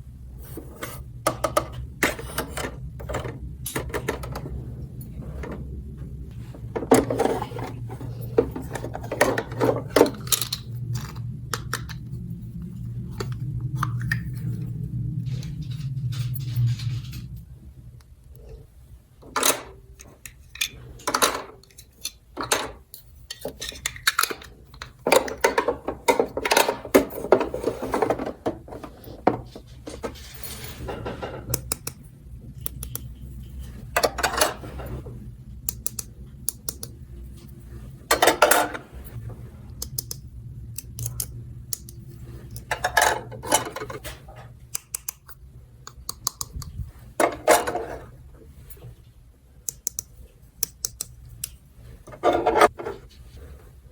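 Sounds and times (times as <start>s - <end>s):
plastic toy pieces clattering: 7.0s - 11.8s, 19.4s - 30.3s.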